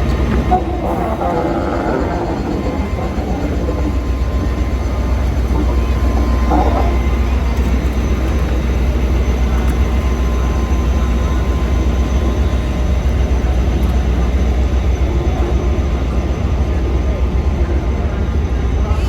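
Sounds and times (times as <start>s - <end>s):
diesel locomotive rumbling: 0.0s - 19.0s.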